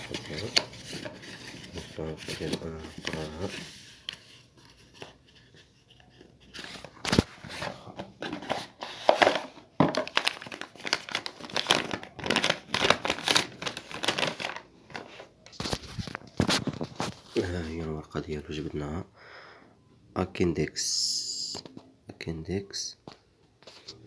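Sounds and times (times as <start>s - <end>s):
paper leaflet crinkling: 0.0s - 7.8s, 10.0s - 17.9s.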